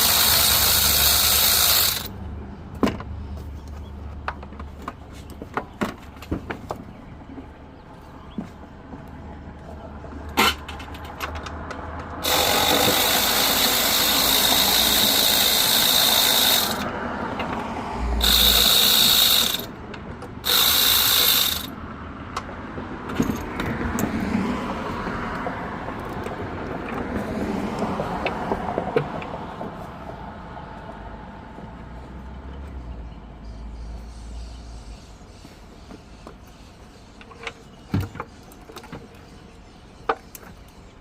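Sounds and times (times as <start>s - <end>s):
ratchet wrench ratcheting: 0.0s - 2.1s, 12.2s - 16.9s, 18.2s - 19.7s, 20.4s - 21.7s.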